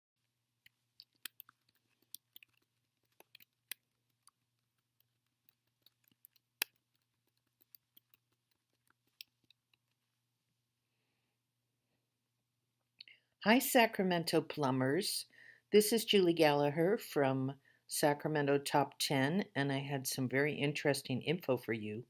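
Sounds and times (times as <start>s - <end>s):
faint clicks and ticks: 0.6s - 10.2s.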